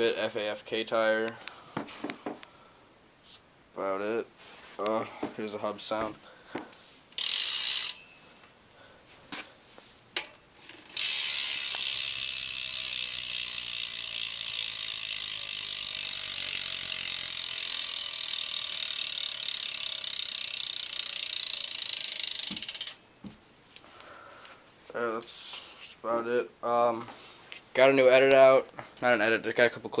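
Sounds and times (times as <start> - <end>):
bicycle hub freewheeling buzz: 7.2 - 8.1, 10.9 - 23.0.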